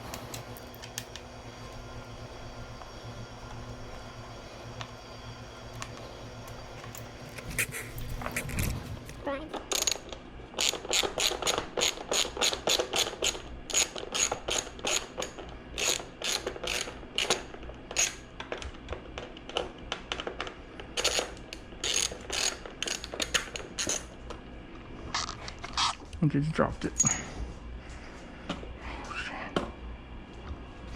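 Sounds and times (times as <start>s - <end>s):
ratchet wrench clicking: 21.8s - 24.0s.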